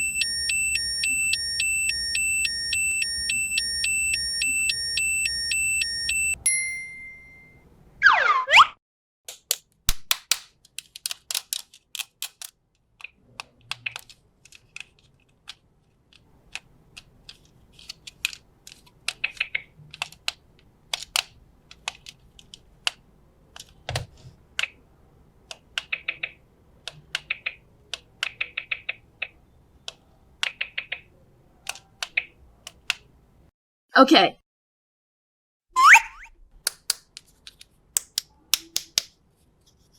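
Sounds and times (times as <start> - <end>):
plastic toy pieces clicking: 9.3 - 23.8, 36.7 - 39.2.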